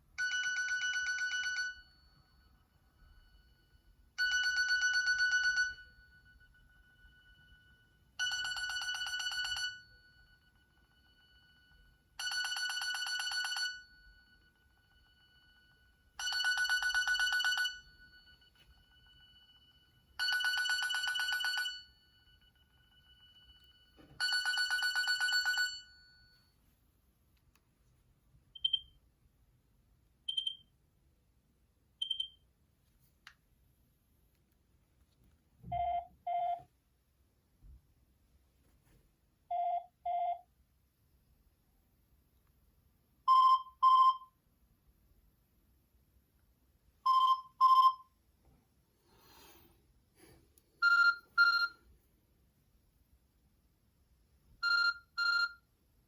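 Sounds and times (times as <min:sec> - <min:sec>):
phone ringer beeps: 0:28.6 - 0:28.9, 0:30.3 - 0:30.7, 0:32.0 - 0:32.4, 0:43.3 - 0:44.3, 0:47.1 - 0:48.1, 0:50.8 - 0:51.8, 0:54.6 - 0:55.7.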